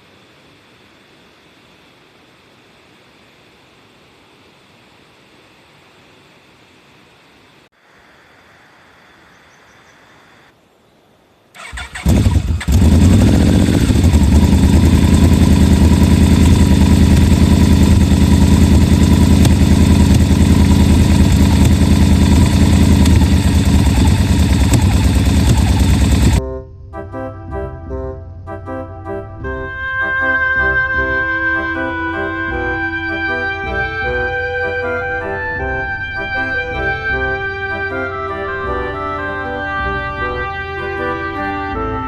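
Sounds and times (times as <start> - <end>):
motorcycle engine starting and idling: 11.6 - 26.4
organ-like music: 25.6 - 42.0.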